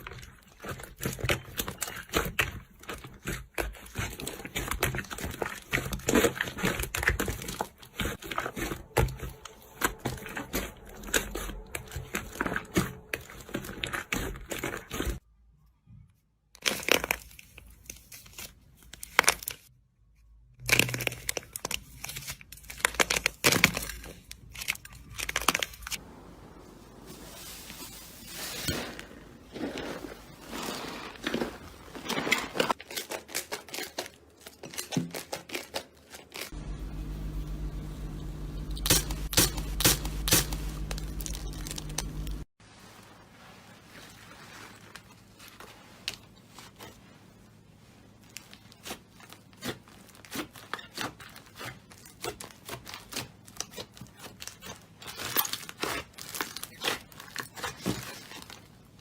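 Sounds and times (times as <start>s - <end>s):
crackly pops and crinkling: 20.6s - 26.0s, 31.1s - 42.5s, 48.2s - 59.0s
steady low hum: 36.6s - 42.5s.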